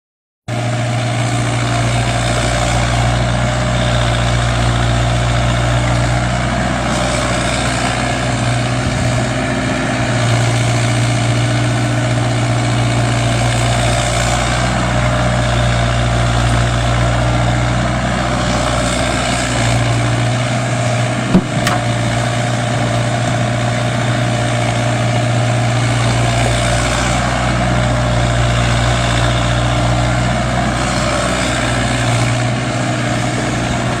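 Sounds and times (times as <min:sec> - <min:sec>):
excavator diesel engine running: 0:00.5 - 0:34.0
sharp knock: 0:21.3 - 0:22.0.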